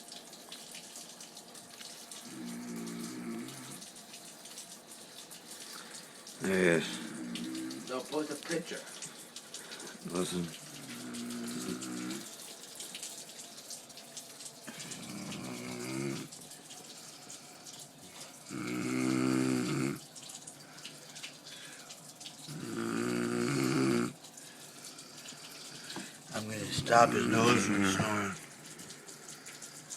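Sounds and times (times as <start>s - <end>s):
man snoring: 2.3s - 3.8s, 6.4s - 7.9s, 10.8s - 12.3s, 15.0s - 16.3s, 18.5s - 20.0s, 22.5s - 24.2s
steady hiss: 5.5s - 13.0s, 14.6s - 20.0s, 20.6s - 29.9s.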